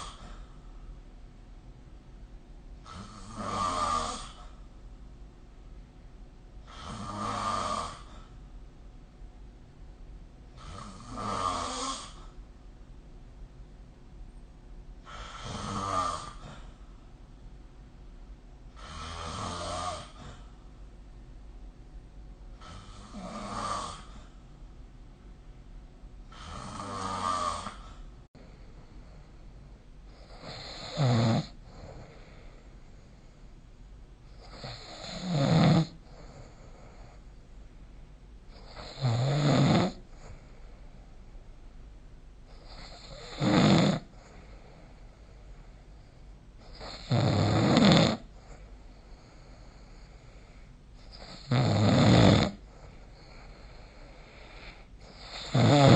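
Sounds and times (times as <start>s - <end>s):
person snoring: 0.0s - 0.4s, 2.8s - 4.6s, 6.6s - 8.3s, 10.6s - 12.3s, 15.0s - 16.8s, 18.7s - 20.5s, 22.6s - 24.3s, 26.3s - 28.8s, 30.1s - 32.7s, 34.4s - 37.2s, 38.5s - 40.5s, 42.5s - 45.0s, 46.6s - 55.9s.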